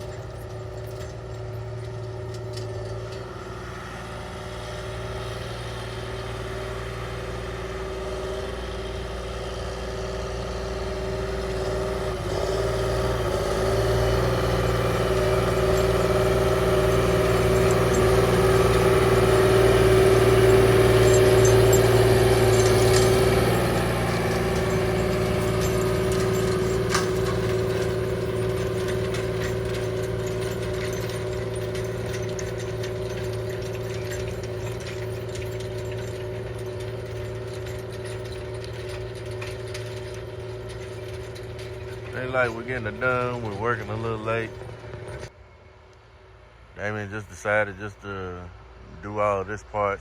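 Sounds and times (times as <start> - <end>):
tractor diesel engine running: 0.0 - 50.0.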